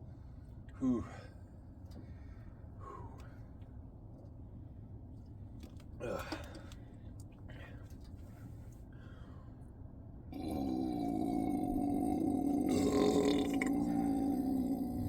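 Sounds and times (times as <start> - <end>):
person belching: 10.4 - 15.0.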